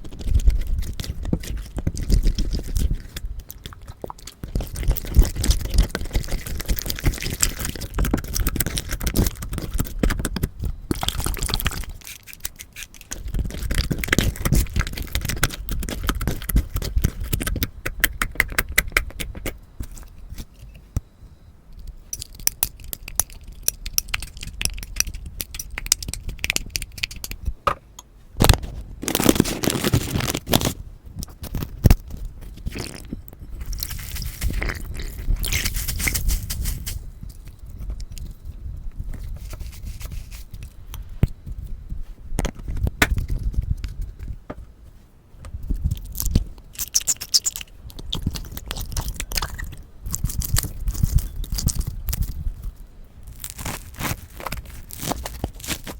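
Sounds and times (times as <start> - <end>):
slime crackling and popping: 0.0 - 19.6, 28.4 - 36.9, 45.8 - 52.4, 53.3 - 55.9.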